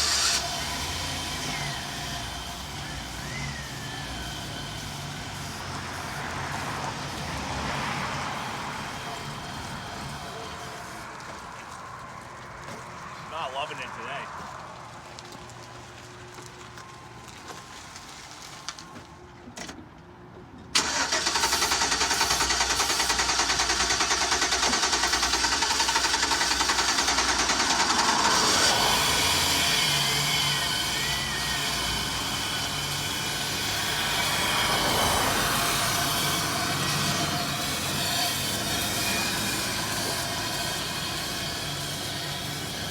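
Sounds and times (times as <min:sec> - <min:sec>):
engine cranking by starter: 0:00.0 - 0:04.9, 0:20.7 - 0:42.9
engine running with even pulse: 0:21.2 - 0:42.9.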